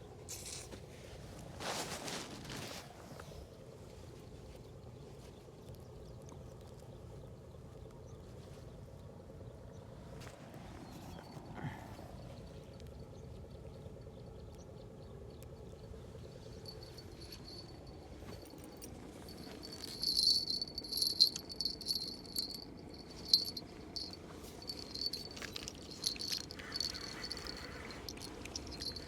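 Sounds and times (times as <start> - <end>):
insect chirring: 19.3 - 29.0.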